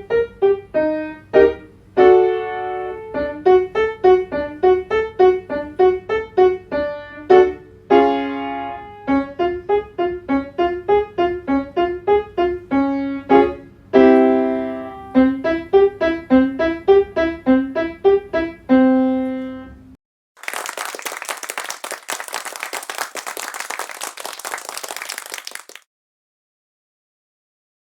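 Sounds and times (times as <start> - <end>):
piano playing staccato runs: 0.0 - 19.1.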